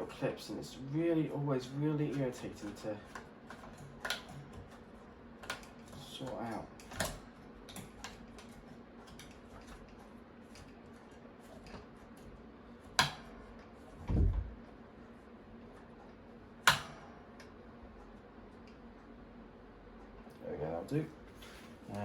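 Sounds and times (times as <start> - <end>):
fan grille clicks and taps: 1.7 - 12.3, 12.9 - 14.8, 15.7 - 19.0
dull thump: 14.0 - 14.6.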